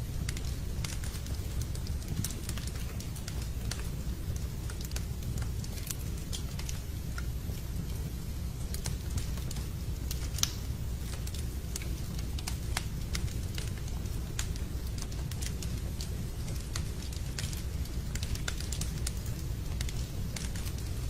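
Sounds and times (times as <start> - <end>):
fire crackles and pops: 0.0 - 21.0
log fire rumbling: 0.0 - 21.0.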